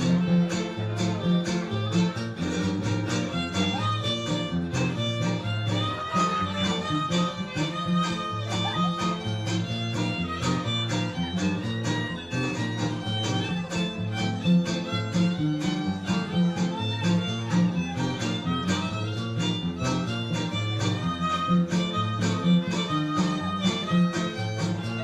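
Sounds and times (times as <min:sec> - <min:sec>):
bass line: 0:00.0 - 0:25.0
fiddle melody: 0:00.0 - 0:25.0
strummed guitars: 0:00.0 - 0:25.0.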